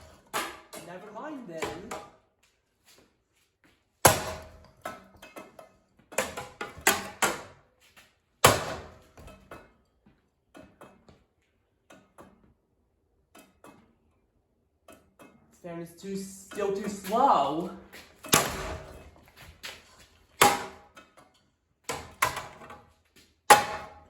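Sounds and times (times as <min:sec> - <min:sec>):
knocks and bangs on ceiling fan: 0:08.4 - 0:09.6, 0:18.2 - 0:19.7, 0:21.9 - 0:22.9, 0:23.5 - 0:24.0.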